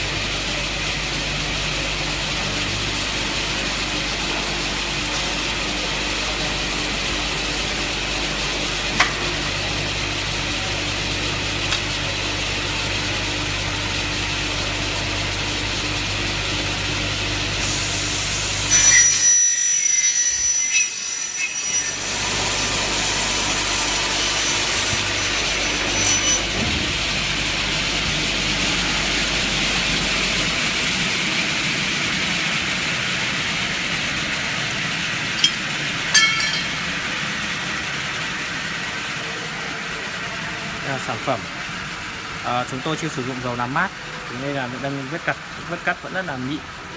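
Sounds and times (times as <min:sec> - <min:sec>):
saw cutting metal with ringing tone: 0:18.7 - 0:22.8, 0:24.1 - 0:26.5, 0:35.4 - 0:37.4.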